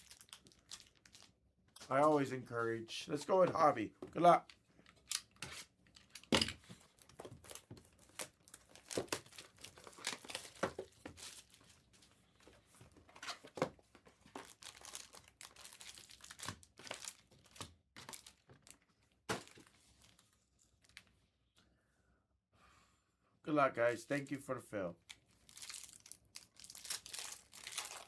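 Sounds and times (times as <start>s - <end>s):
plastic and foil wrapping tearing: 0.0s - 1.3s, 7.0s - 11.6s, 14.4s - 18.8s, 25.1s - 28.0s.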